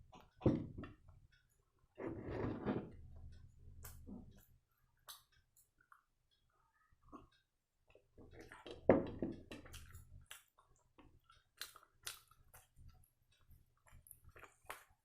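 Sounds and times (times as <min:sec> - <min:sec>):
wet chewing: 0:08.2 - 0:15.0.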